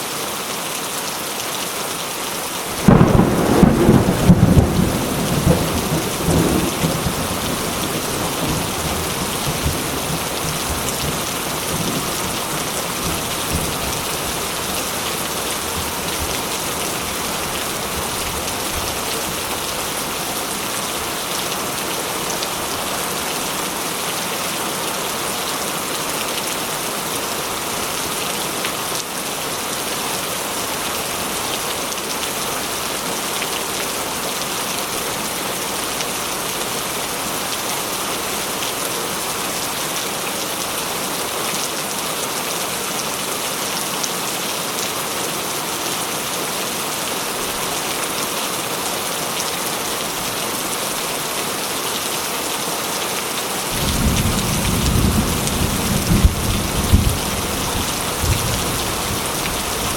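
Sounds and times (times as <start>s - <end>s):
rain falling and splashing: 0.0s - 59.9s
thunder rumbling: 2.7s - 20.0s, 53.7s - 59.6s.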